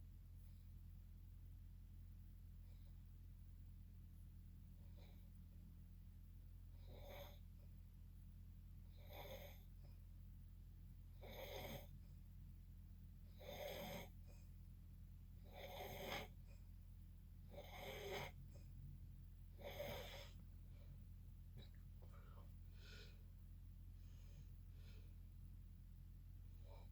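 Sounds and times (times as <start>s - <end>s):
constant low hum: 0.0s - 26.9s
person snoring: 15.5s - 16.3s, 17.5s - 18.4s, 19.6s - 20.4s.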